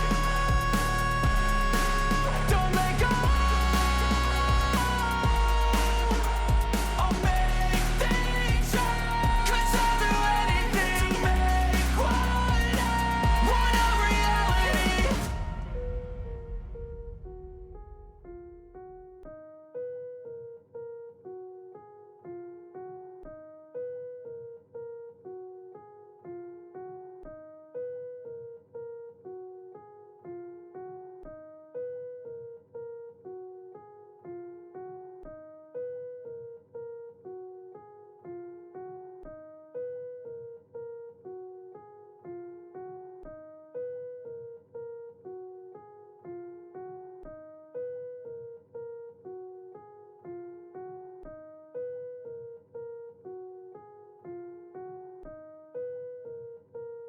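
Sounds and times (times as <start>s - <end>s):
deep bass note: 0.0s - 18.8s.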